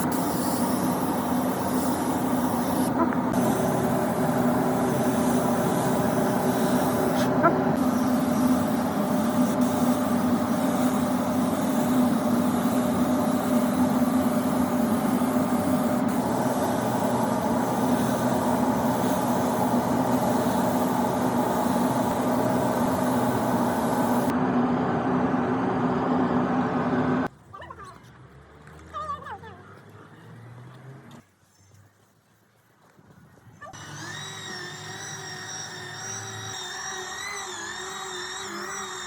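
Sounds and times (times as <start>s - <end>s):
machine running with low hum: 0.0s - 27.3s, 33.8s - 39.0s.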